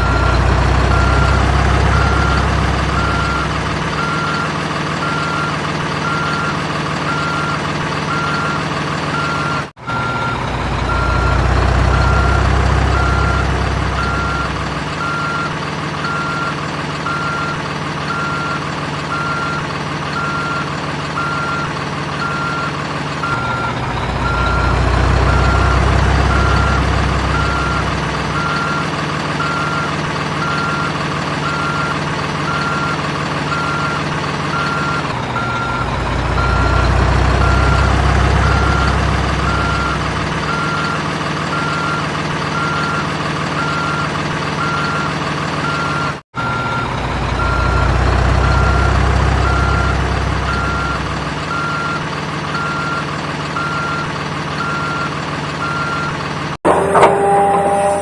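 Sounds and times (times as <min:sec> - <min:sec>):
reversing alarm beeping: 0:00.0 - 0:19.6, 0:20.2 - 0:43.0, 0:43.6 - 0:58.0
low engine rumble: 0:00.0 - 0:42.0, 0:56.6 - 0:58.0.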